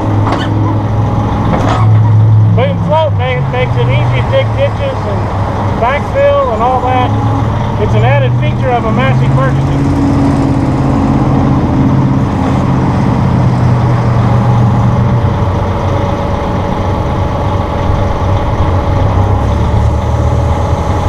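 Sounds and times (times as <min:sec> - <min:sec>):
tractor diesel engine running: 0:00.0 - 0:21.0.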